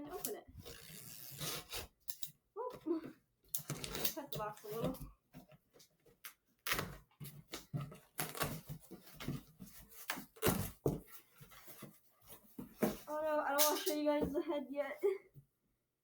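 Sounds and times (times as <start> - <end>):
cardboard box rustling and scraping: 3.7 - 5.9, 6.9 - 13.2.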